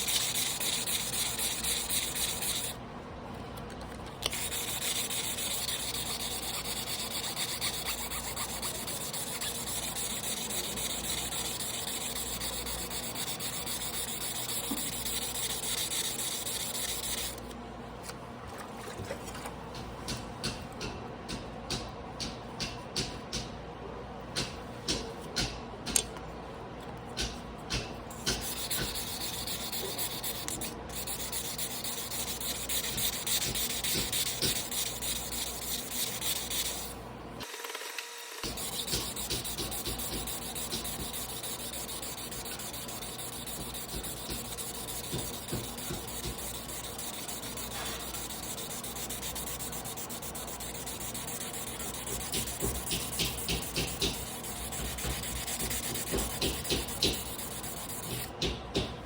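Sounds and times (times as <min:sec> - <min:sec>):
knife scraping on a whetstone: 0:04.3 - 0:17.4, 0:38.5 - 0:58.3.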